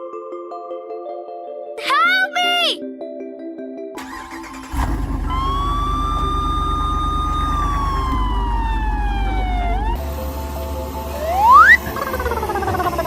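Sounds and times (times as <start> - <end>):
low engine rumble: 4.0 - 13.0
police siren wailing: 4.0 - 13.0.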